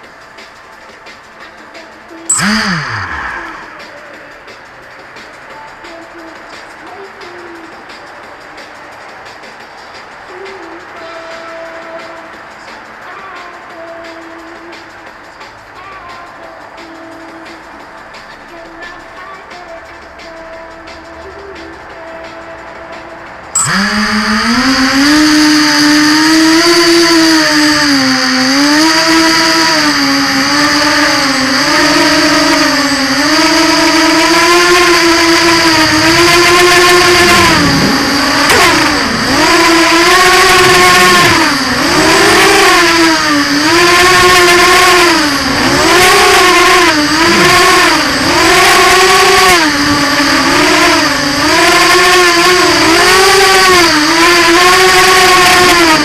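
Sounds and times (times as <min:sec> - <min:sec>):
steady high-pitched tone: 0:01.8 - 0:04.4, 0:21.5 - 0:56.0
drone motors whining: 0:02.2 - 0:04.2, 0:23.2 - 0:56.0.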